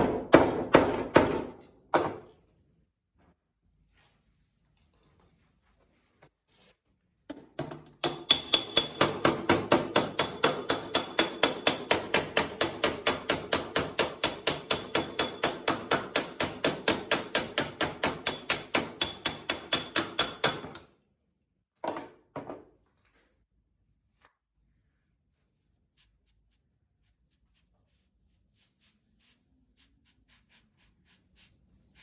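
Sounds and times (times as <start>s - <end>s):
hammer beating sheet metal: 0.0s - 1.6s, 8.0s - 20.8s.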